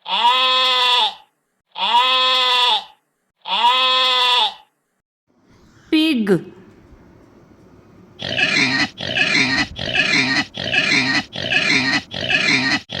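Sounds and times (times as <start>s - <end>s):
pig making rough calls: 8.2s - 13.0s.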